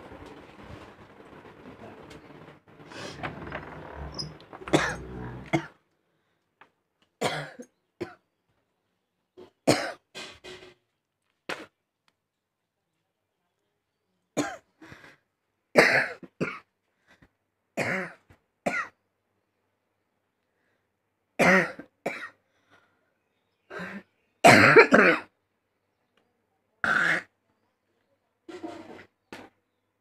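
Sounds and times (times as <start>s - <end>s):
person coughing: 4.7s - 5.7s, 7.2s - 8.2s, 24.5s - 25.3s.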